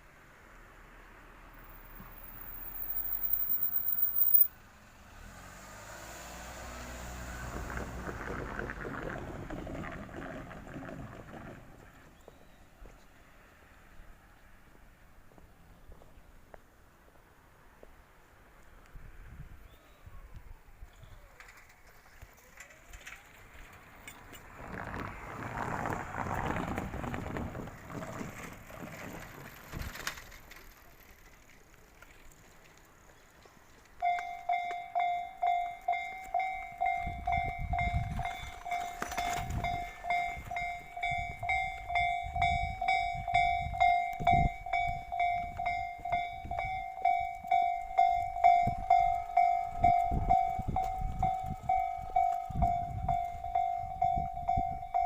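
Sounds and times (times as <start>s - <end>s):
soft passing rumble: 0.7s - 16.3s, 18.5s - 33.7s
electronic crossing bell ringing: 2.4s - 4.5s, 34.0s - 55.0s.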